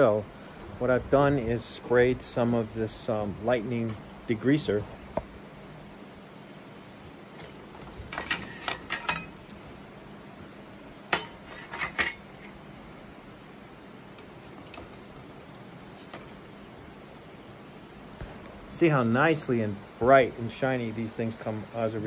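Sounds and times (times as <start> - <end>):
metal utensils clinking: 7.4 - 9.4, 11.1 - 12.6.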